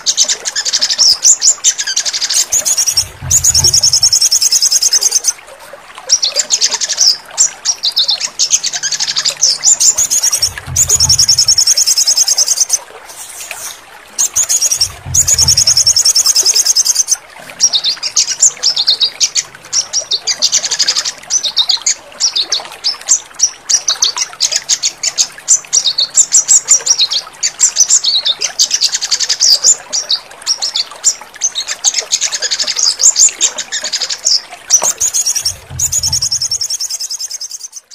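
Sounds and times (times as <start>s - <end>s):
songbird chirping and trilling: 0.0s - 5.4s, 6.1s - 37.9s
low rumbles: 2.8s - 4.3s, 10.0s - 11.6s, 14.6s - 16.1s, 35.4s - 36.6s.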